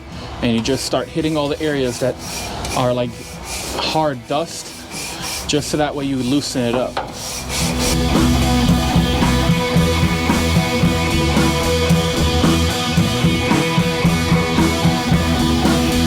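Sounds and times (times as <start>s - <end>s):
rock music: 7.5s - 16.0s.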